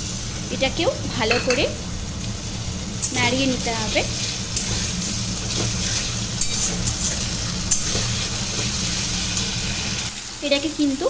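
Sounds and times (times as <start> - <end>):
paste sizzling in hot oil: 0.0 - 11.0
spatula scraping a pan: 3.6 - 9.5.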